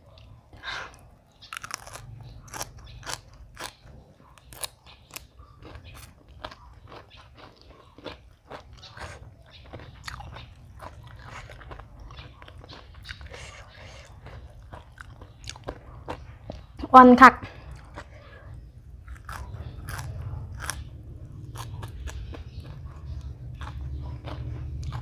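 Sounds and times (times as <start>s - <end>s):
crunchy chewing: 0.0s - 16.8s, 17.5s - 25.0s
steady low rumble: 17.5s - 25.0s.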